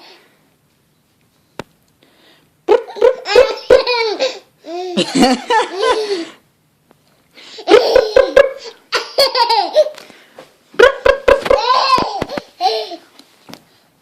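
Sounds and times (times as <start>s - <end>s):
baby giggling: 2.7s - 6.2s, 7.6s - 10.0s, 10.8s - 13.0s.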